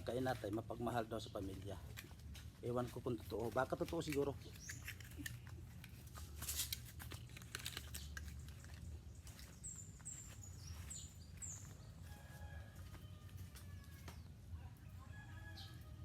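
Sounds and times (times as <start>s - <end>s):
lovebirds chirping: 0.0s - 16.0s
light clicks and rustling: 1.5s - 9.5s.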